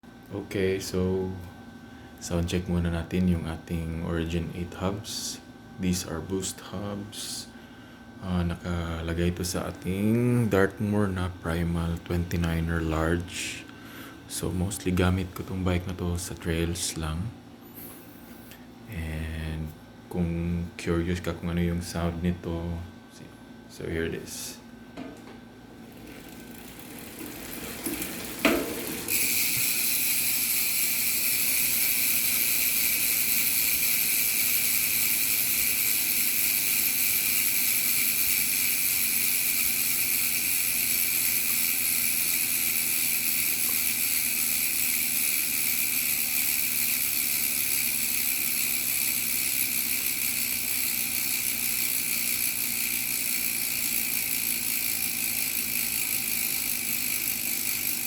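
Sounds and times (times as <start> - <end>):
bicycle freehub ratcheting buzz: 25.8 - 58.0.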